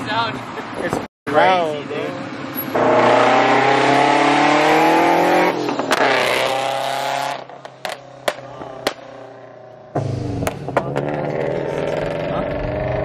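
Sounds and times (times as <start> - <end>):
car engine accelerating hard: 2.2 - 9.0, 9.9 - 13.0
exhaust cracks: 7.4 - 13.0.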